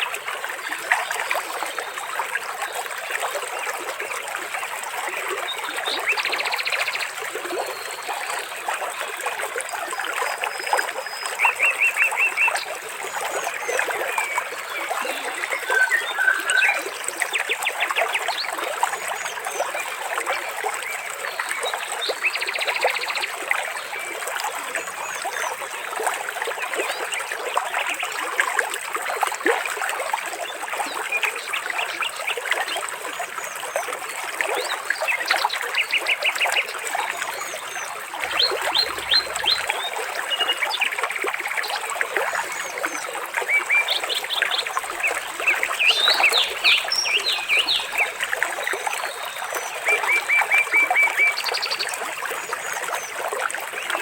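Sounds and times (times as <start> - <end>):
water trickling and splashing: 0.0 - 54.0
small birds chirping and trilling: 37.8 - 40.6, 43.6 - 50.3.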